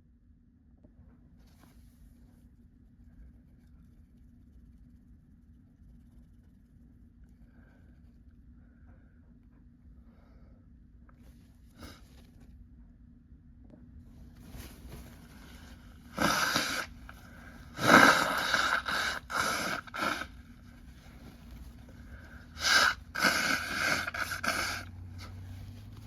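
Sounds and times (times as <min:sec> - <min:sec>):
person blowing nose: 0:14.9 - 0:20.4, 0:21.2 - 0:25.5
person sneezing: 0:16.1 - 0:20.4, 0:22.1 - 0:25.4.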